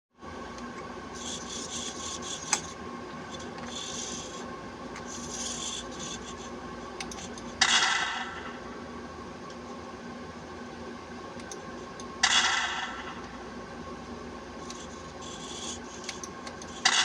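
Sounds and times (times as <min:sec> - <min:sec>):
engine-like hum from small speaker: 0:00.2 - 0:17.0.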